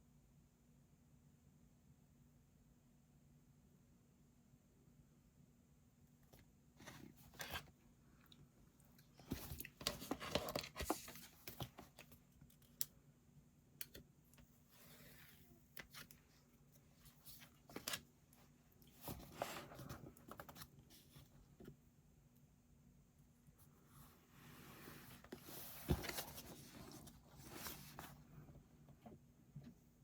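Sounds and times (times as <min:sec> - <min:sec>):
paper rustling: 0:09.2 - 0:12.2, 0:24.6 - 0:28.2.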